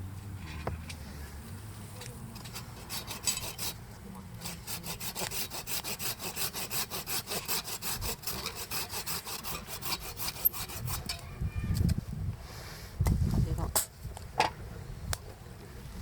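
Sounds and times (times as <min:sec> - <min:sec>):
hand saw cutting wood: 0:02.4 - 0:03.8, 0:04.4 - 0:11.2.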